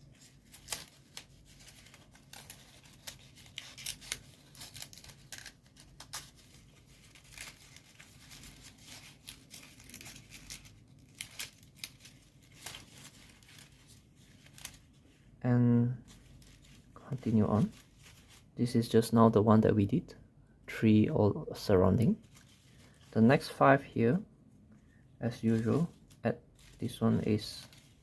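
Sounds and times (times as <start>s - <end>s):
paper rustling and crinkling: 0.0s - 15.4s, 16.0s - 18.7s, 21.6s - 23.7s, 25.2s - 28.0s.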